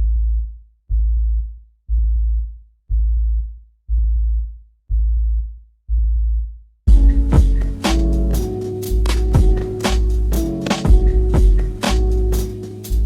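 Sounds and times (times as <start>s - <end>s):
deep electronic bass hits: 6.9s - 13.0s.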